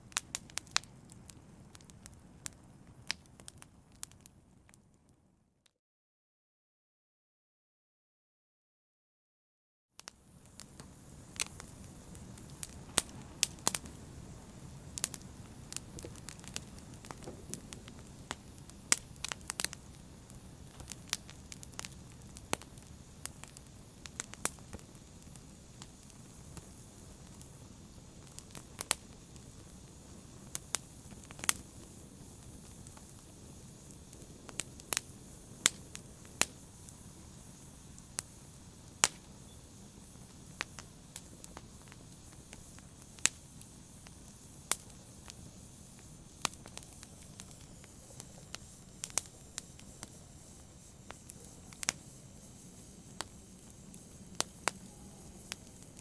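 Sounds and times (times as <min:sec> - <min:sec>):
wood fire crackling: 0:00.0 - 0:05.2, 0:10.0 - 0:56.0.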